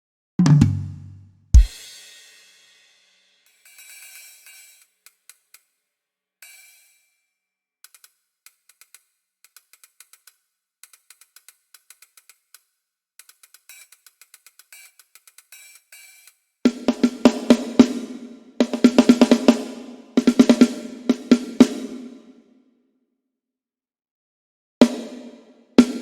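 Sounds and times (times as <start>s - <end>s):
snare and tom strikes: 0.4s - 3.2s, 24.8s - 26.0s
hi-hat ticks: 3.4s - 5.7s, 6.4s - 7.0s, 7.8s - 16.4s.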